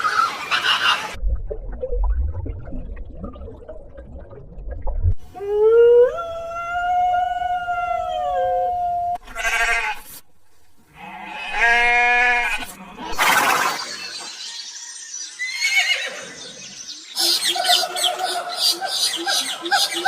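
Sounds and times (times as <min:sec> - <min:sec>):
low rumble: 0:01.2 - 0:05.4.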